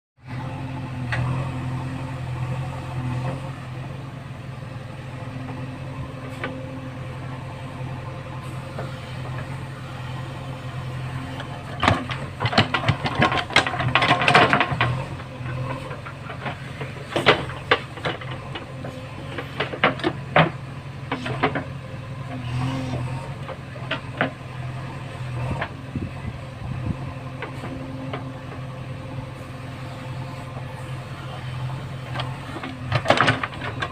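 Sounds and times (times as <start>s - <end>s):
diesel engine running: 0.2s - 33.9s
machine knocks and rattles: 11.2s - 21.8s, 32.2s - 33.9s.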